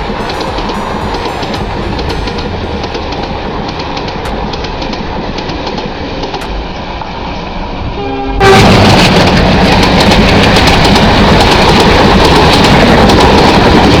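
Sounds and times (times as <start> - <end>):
steady tone: 0.0 - 8.8
train rushing on rails: 0.0 - 14.0.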